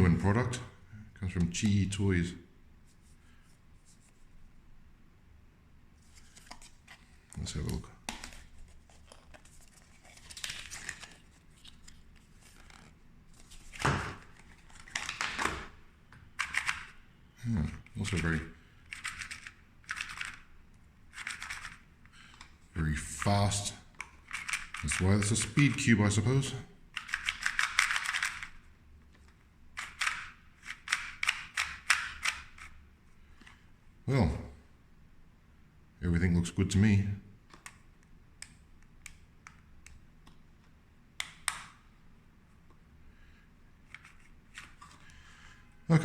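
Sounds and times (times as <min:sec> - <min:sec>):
puzzle cube clicking: 0:16.4 - 0:17.0, 0:17.7 - 0:20.4, 0:21.1 - 0:22.5, 0:24.0 - 0:25.8, 0:27.0 - 0:28.6, 0:29.8 - 0:32.7.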